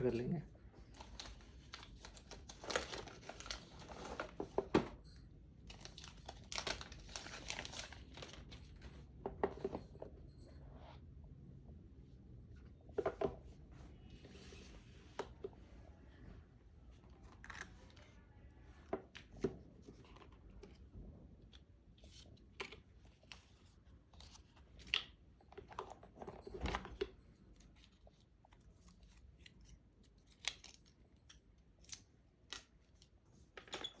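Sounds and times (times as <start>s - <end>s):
packaging rustling and tearing: 0.9s - 4.4s, 5.7s - 8.6s.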